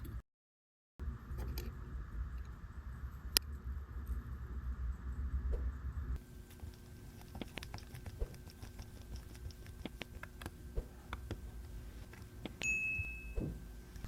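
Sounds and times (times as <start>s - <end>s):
high metallic ring: 12.6s - 13.7s.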